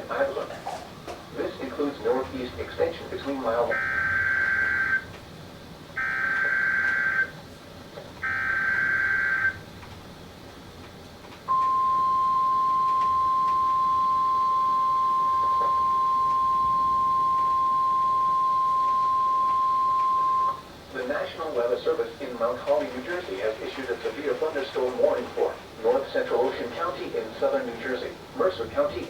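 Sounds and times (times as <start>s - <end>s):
steady warning alarm tone: 3.2s - 5.1s, 6.0s - 7.4s, 8.2s - 9.7s, 11.5s - 20.8s.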